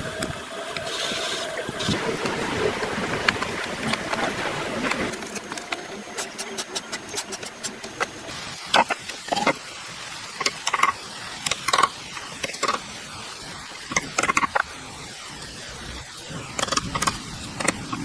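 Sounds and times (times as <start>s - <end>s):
sharp clicks and knocks: 10.4s - 12.9s, 13.9s - 14.7s.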